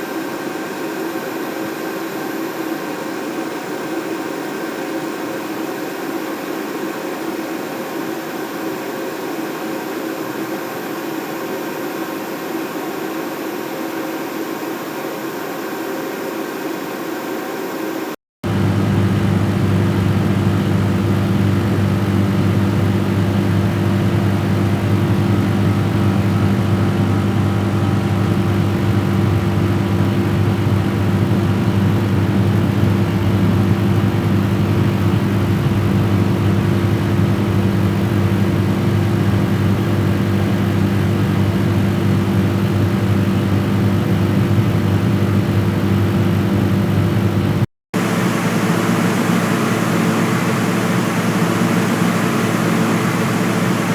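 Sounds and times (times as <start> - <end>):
low mechanical hum: 18.5 - 53.9.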